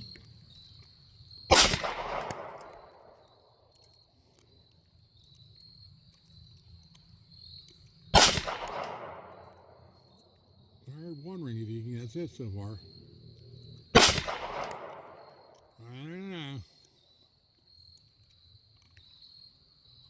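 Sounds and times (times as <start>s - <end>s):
pistol shots with echo: 1.5s - 3.3s, 8.2s - 9.8s, 14.0s - 15.6s.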